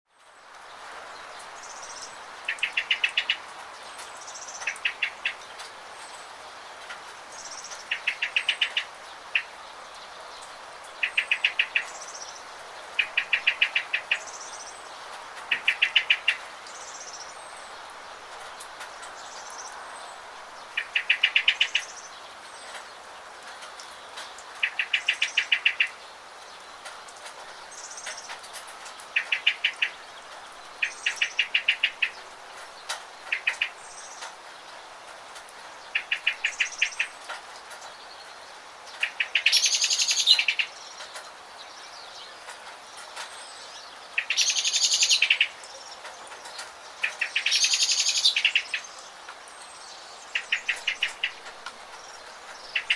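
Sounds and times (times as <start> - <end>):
rain hissing: 0.2 - 52.9
songbird trilling: 1.6 - 3.5, 4.2 - 5.4, 7.4 - 9.6, 11.0 - 12.4, 13.0 - 14.8, 15.5 - 17.3, 20.7 - 22.1, 24.6 - 26.0, 29.2 - 30.1, 30.8 - 32.3, 33.3 - 34.2, 35.9 - 37.2, 39.0 - 41.0, 43.4 - 45.9, 47.0 - 52.9.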